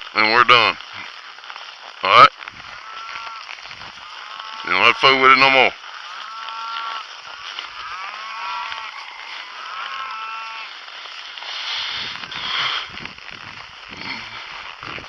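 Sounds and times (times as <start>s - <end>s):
cattle mooing: 2.6s - 11.4s, 12.0s - 12.9s.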